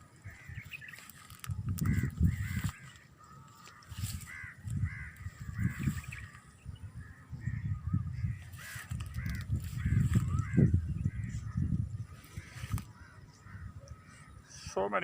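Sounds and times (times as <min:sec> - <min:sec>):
birds calling: 0:00.0 - 0:15.0.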